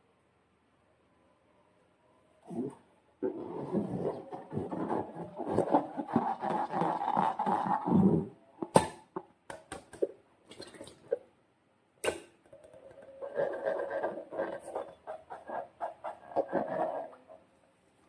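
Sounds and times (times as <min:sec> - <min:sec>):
slime squelching and crackling: 0:03.2 - 0:08.3.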